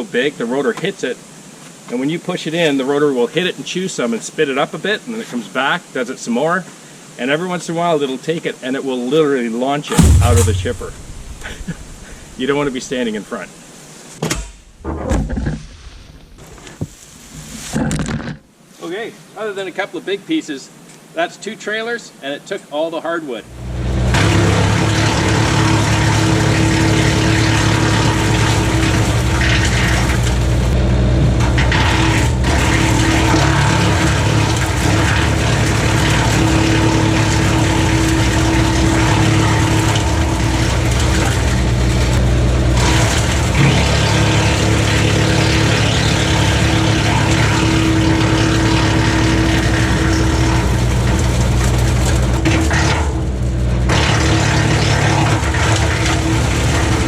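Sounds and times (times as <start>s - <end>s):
wood chipper chewing limbs: 23.7s - 57.0s.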